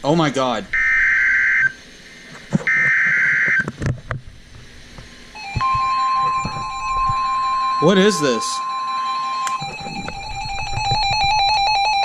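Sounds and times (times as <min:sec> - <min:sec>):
steady attention tone: 0:04.6 - 0:12.0
buzzy digital data bursts: 0:05.3 - 0:12.0.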